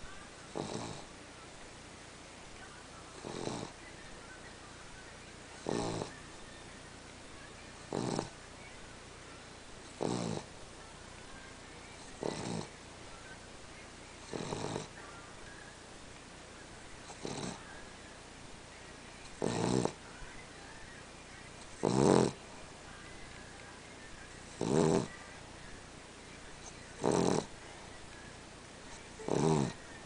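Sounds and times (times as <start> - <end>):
dog snoring: 0.5 - 1.1, 3.1 - 3.8, 5.6 - 6.2, 7.8 - 8.4, 9.8 - 10.5, 12.0 - 12.7, 14.2 - 15.0, 17.0 - 17.6, 19.2 - 20.0, 21.6 - 22.4, 24.4 - 25.2, 26.6 - 28.0, 29.0 - 29.9.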